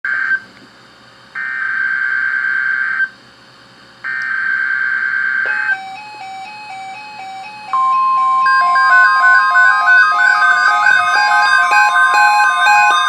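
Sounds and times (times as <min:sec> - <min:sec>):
harsh digital data bursts: 0:04.1 - 0:13.0
electronic tune of alternating notes: 0:05.5 - 0:13.0.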